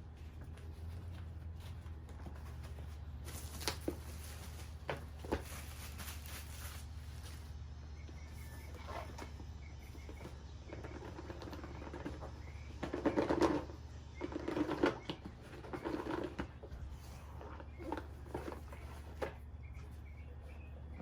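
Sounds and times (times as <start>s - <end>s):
box and padding rustling: 0.0s - 7.5s
steady low hum: 0.0s - 21.0s.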